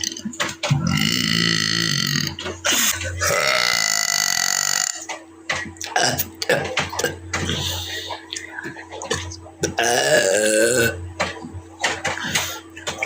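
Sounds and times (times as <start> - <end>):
woman belching: 0.8 - 2.4, 3.2 - 5.1, 5.9 - 7.2, 9.6 - 11.0.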